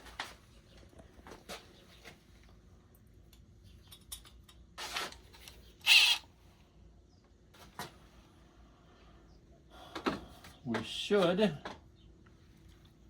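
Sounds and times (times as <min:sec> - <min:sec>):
rubber belt squeaking on metal: 0:05.8 - 0:06.2.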